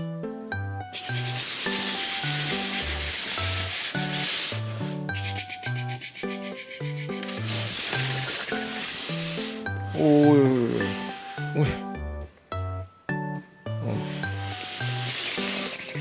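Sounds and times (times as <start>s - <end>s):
scratchy rubbing hiss: 1.0s - 10.0s, 14.0s - 16.0s.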